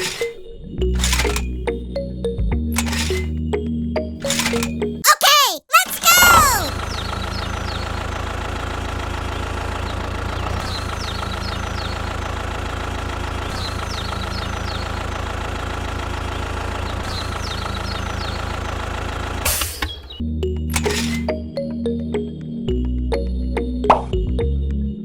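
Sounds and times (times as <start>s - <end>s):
music: 0.0s - 5.0s, 20.2s - 25.0s.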